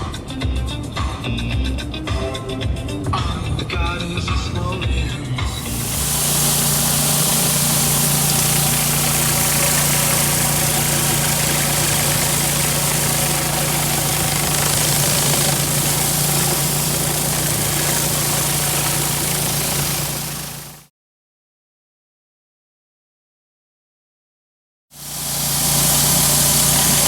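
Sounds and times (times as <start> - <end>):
high hiss: 5.5 - 20.8, 25.0 - 27.0
pressure washer engine running: 5.5 - 20.9, 25.0 - 27.0.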